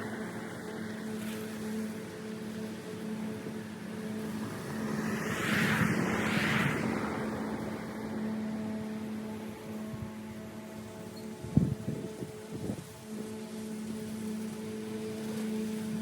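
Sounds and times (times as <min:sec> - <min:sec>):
noise of something passing: 0:04.2 - 0:08.7.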